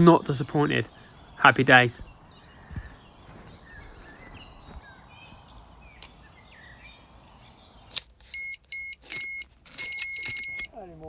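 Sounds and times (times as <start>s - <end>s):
faint birdsong: 0.0s - 11.0s
bite alarm beeping: 8.3s - 10.8s.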